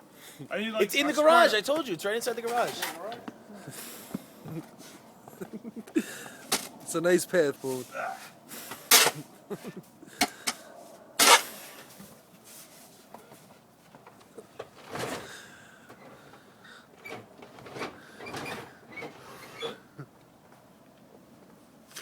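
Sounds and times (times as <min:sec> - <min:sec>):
rustling: 0:00.6 - 0:03.4.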